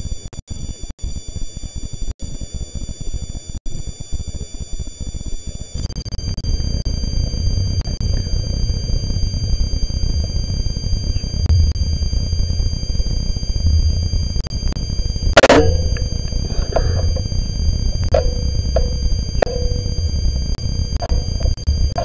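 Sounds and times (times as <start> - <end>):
high-pitched electronic whine: 0.0 - 22.0
low rumble: 6.8 - 22.0
loud sharp sound: 11.4 - 22.0.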